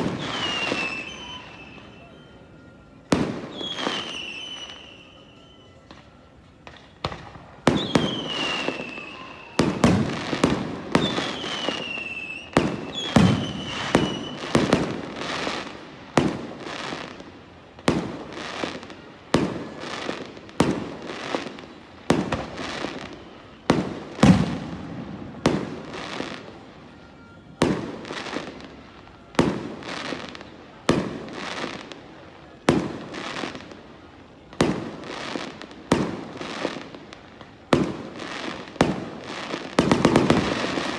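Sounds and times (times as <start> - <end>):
falling firework whistles: 0.0 - 32.0
firework bangs with echo: 0.0 - 32.0, 32.6 - 33.8, 34.5 - 40.9.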